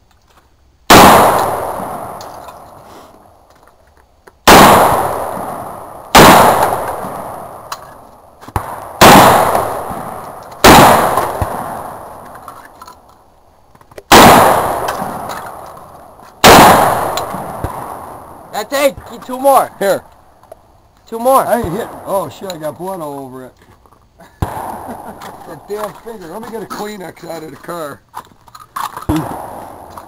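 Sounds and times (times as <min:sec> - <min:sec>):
gunshots: 0:00.9 - 0:02.5, 0:04.4 - 0:08.0, 0:08.6 - 0:12.4, 0:14.1 - 0:20.0, 0:24.4 - 0:26.0, 0:29.1 - 0:30.0.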